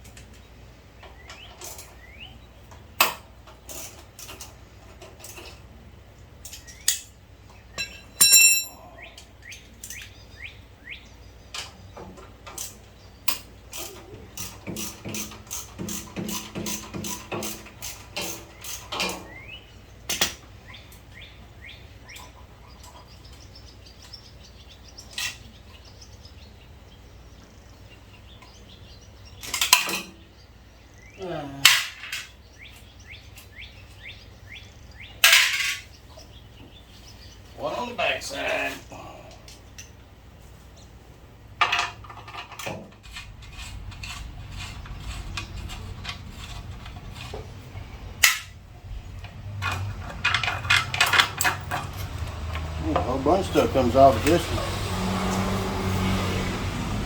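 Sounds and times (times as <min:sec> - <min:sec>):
birds chirping: 0:00.0 - 0:57.0
tools clinking on metal: 0:07.8 - 0:08.8, 0:49.5 - 0:53.1.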